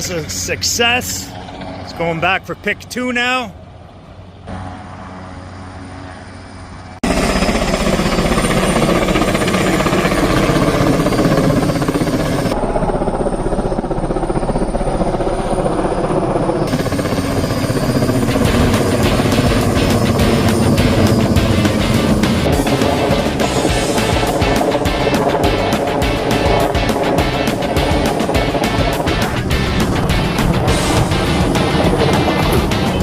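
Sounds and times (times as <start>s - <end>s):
faint engine drone: 0.0s - 33.0s
helicopter rotor chop: 0.0s - 33.0s.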